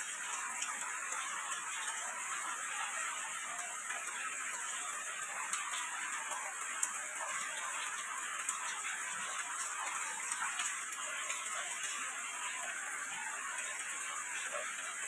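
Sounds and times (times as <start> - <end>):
raindrops ticking: 0.0 - 15.0
steady rain hiss: 0.0 - 15.0.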